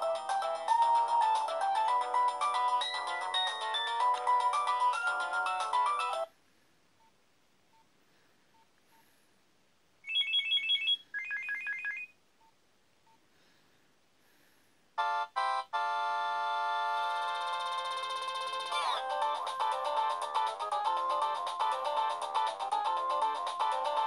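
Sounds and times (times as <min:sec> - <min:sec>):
polyphonic ringtone: 0:00.1 - 0:06.3, 0:10.1 - 0:12.1, 0:15.0 - 0:24.0
mobile phone ringtones: 0:02.0 - 0:06.3, 0:10.1 - 0:12.2, 0:15.0 - 0:24.0.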